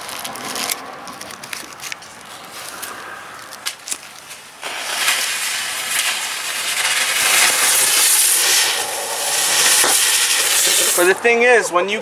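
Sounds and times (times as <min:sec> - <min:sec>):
firework hissing spray: 0:04.4 - 0:11.4.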